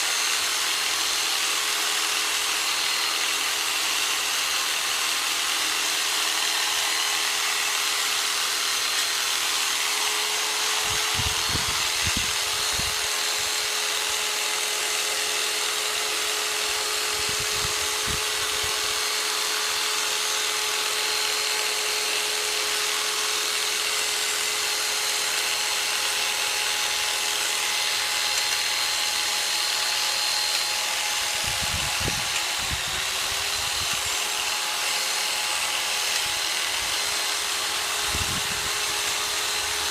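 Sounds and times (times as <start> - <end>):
jigsaw motor whining: 0.0 - 39.9.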